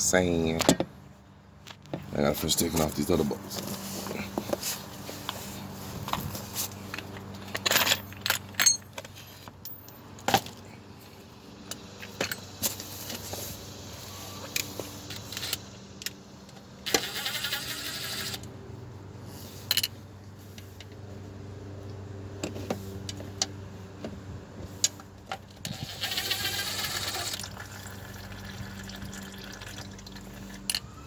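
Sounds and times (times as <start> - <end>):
metal tools clinking on bolts: 6.9 - 10.6, 14.5 - 16.2.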